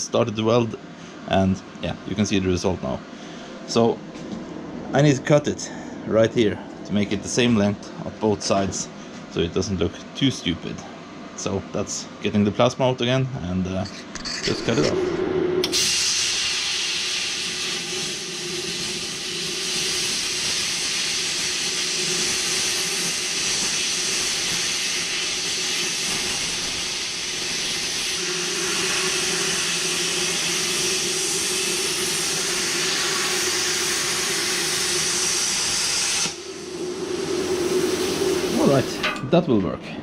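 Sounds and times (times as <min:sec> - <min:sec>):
low hum: 0:14.2 - 0:16.0, 0:36.3 - 0:40.0
plasma cutter hissing: 0:15.6 - 0:39.3.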